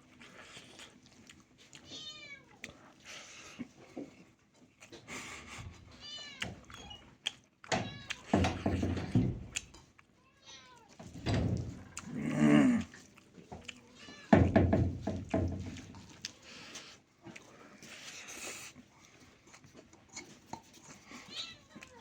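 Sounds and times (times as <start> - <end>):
cat meowing: 1.8 - 2.6, 10.2 - 11.0.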